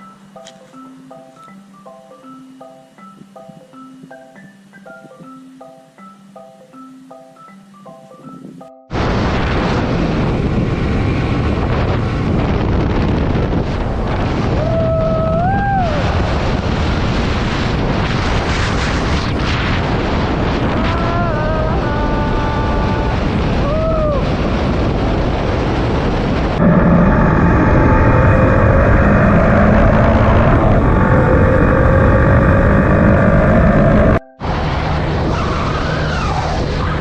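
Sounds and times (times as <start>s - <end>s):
wind blasting microphone: 8.2s - 37.0s
road noise: 24.8s - 37.0s.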